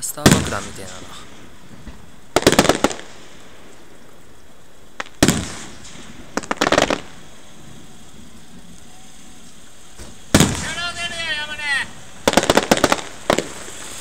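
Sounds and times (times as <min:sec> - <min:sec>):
fireworks crackling: 0:00.0 - 0:14.0
loud firework bang: 0:00.2 - 0:03.4, 0:05.0 - 0:07.4, 0:09.3 - 0:14.0.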